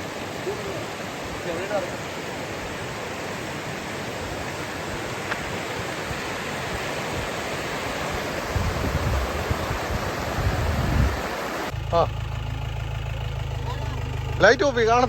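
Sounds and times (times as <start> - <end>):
stream water flowing: 0.0 - 11.8.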